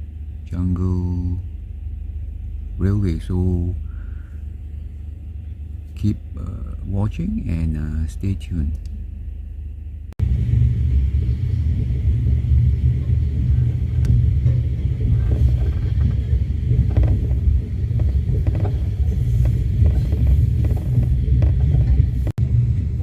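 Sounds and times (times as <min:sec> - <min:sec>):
train rumbling on track: 0:10.2 - 0:23.0
wheels clicking and knocking: 0:14.0 - 0:22.4.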